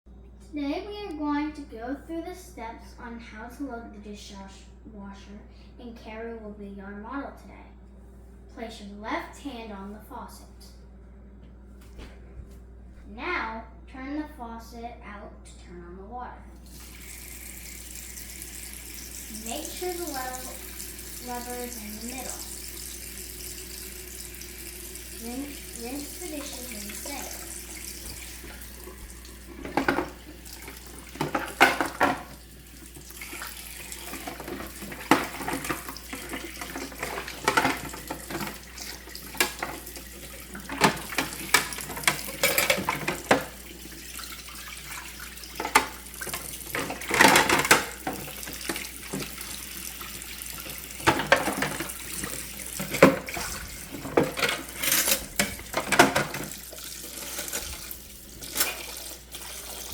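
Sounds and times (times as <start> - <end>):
tap running into sink: 21.2 - 43.6
dishes clattering: 29.5 - 32.3, 34.0 - 38.7, 40.6 - 43.6, 45.6 - 49.3, 51.0 - 59.0.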